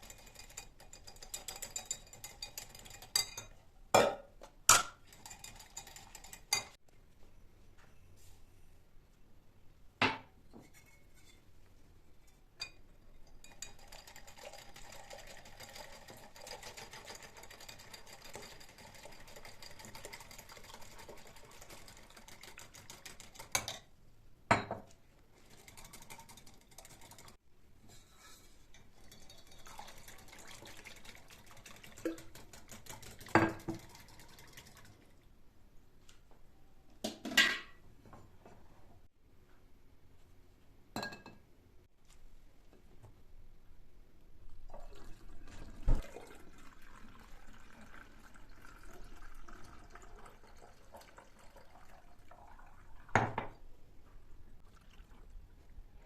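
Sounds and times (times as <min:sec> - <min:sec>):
kitchenware clinking: 0:00.0 - 0:06.8, 0:28.0 - 0:30.4, 0:37.1 - 0:37.8, 0:41.0 - 0:41.4.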